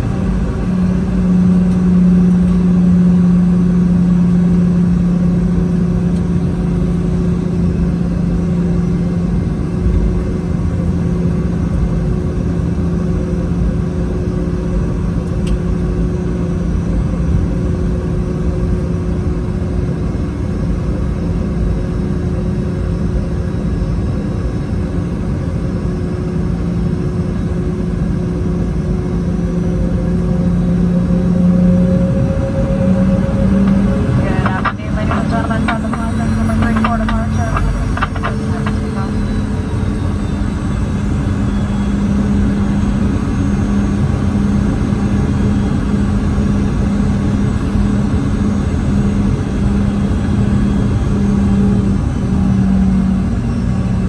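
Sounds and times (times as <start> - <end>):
jet engines humming in cabin: 0.0 - 54.0
rising high tone: 29.7 - 43.4.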